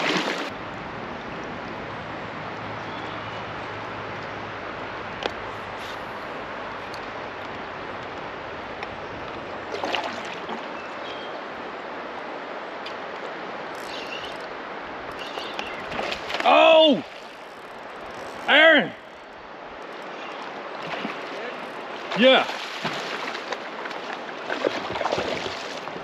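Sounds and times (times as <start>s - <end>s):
flowing river water: 0.0s - 26.0s.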